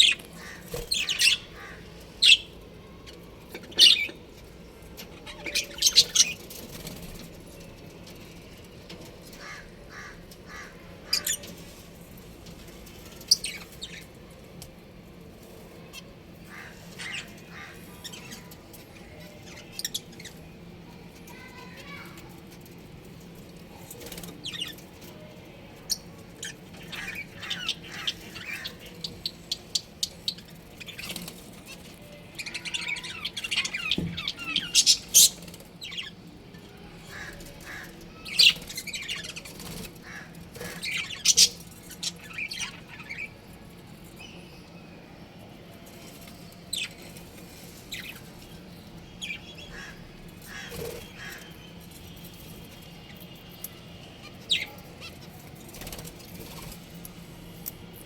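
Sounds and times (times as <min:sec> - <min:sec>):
budgerigars chirping: 0:00.0 - 0:02.6.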